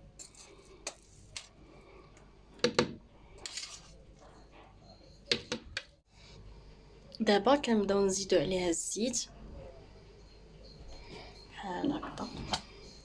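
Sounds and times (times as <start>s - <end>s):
kitchen utensils and dishes clinking: 0.0s - 1.6s, 3.4s - 5.2s.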